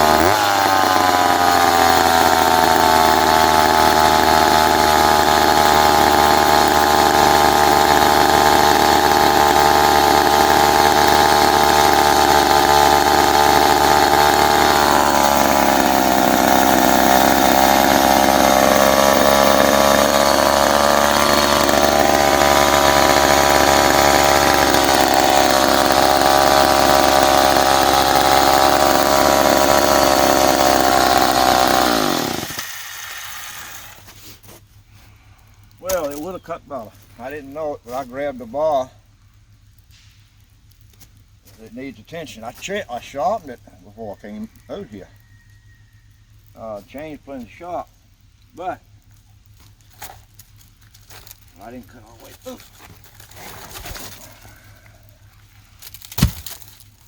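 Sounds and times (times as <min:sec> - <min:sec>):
chainsaw cutting wood: 0:00.0 - 0:34.6, 0:35.8 - 0:36.4, 0:49.4 - 0:57.0.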